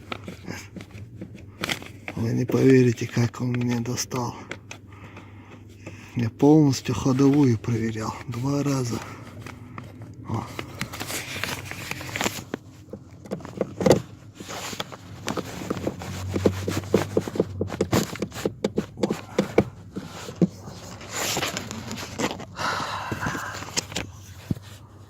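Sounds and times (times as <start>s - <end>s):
rustling and scraping: 0.0s - 25.0s.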